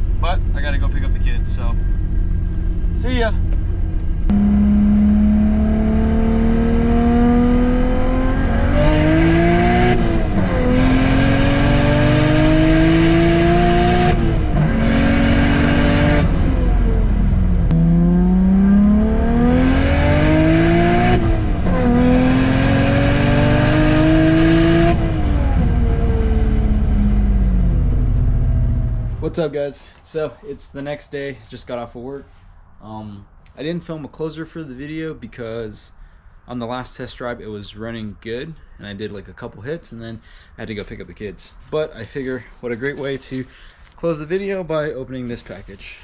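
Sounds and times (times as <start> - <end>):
intake and exhaust rush: 0.0 - 33.6
car engine accelerating hard: 0.2 - 29.4.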